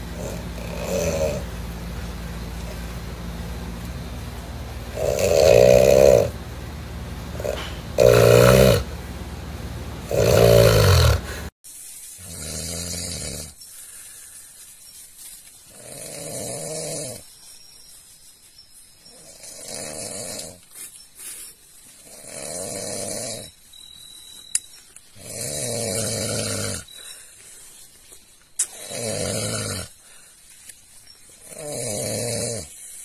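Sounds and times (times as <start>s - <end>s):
man snoring loudly: 0.1s - 1.5s, 4.9s - 6.4s, 7.3s - 8.9s, 10.0s - 11.5s, 12.3s - 13.6s, 15.7s - 17.2s, 19.4s - 20.6s, 22.0s - 23.5s, 25.2s - 26.9s, 28.7s - 30.0s, 31.5s - 32.7s
quiet breaths: 13.5s - 15.6s, 26.8s - 28.9s, 29.9s - 31.6s.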